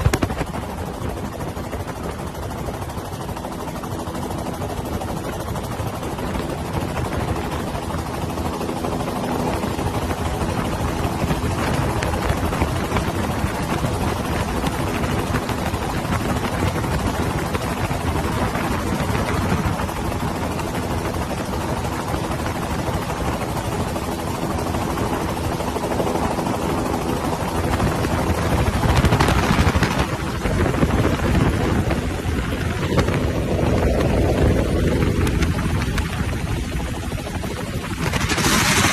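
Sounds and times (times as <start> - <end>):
helicopter rotor and engine: 0.0 - 38.9.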